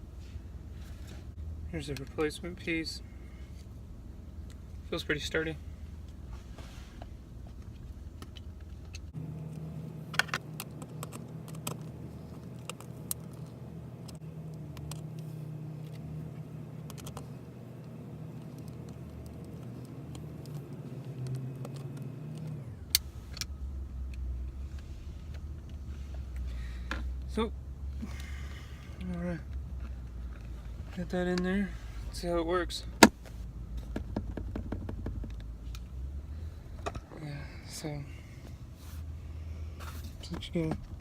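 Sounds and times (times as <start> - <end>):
steady low hum: 0.0 - 41.0
plastic parts clicking and knocking: 33.9 - 35.5.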